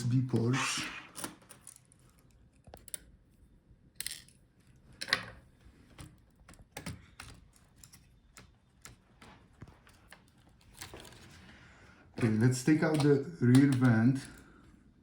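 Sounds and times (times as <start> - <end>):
laptop parts clicking: 1.2 - 3.2, 4.0 - 11.3, 12.2 - 14.5.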